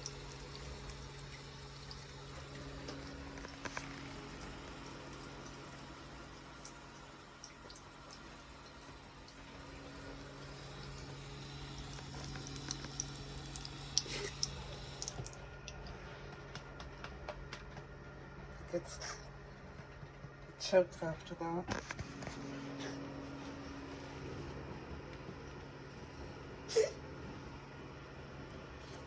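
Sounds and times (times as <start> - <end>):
cat lapping water: 0.0 - 15.4
water trickling: 0.0 - 15.4.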